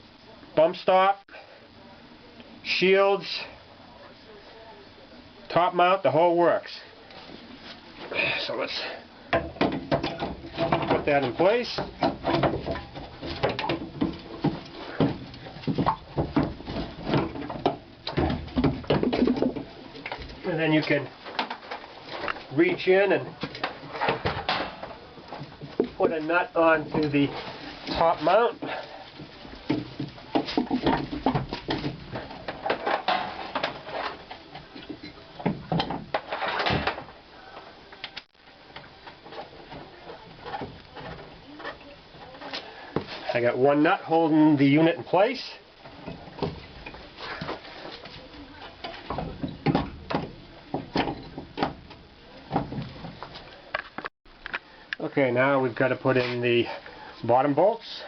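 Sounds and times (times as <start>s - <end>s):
metal knocks clunks and scrapes: 9.3s - 37.2s, 45.9s - 54.1s.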